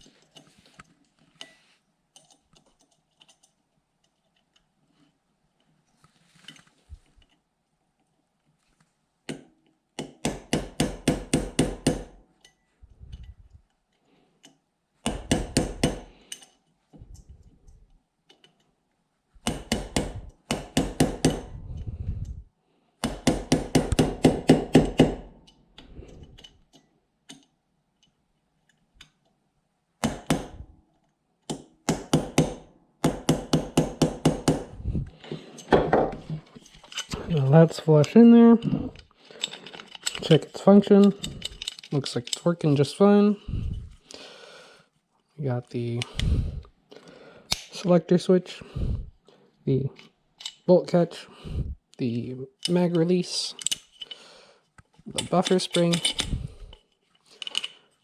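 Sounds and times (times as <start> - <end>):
hammer tapping a metal punch: 15.1 - 16.1, 19.4 - 21.5.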